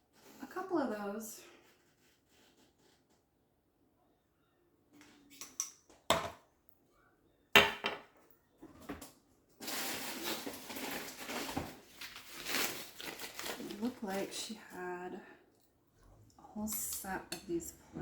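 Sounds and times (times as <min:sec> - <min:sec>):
packing paper rustling: 0:09.6 - 0:14.5.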